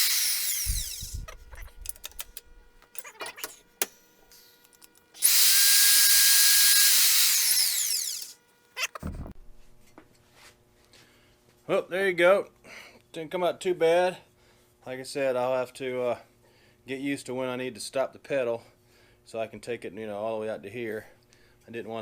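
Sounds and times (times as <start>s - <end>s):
motor whining and winding down: 0.0s - 3.6s, 5.2s - 9.3s
low thump: 9.0s - 9.6s.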